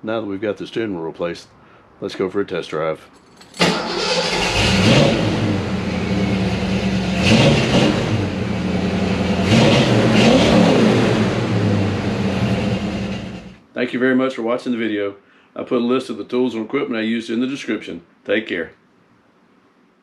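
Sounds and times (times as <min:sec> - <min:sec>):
car engine revving: 0:03.6 - 0:13.6.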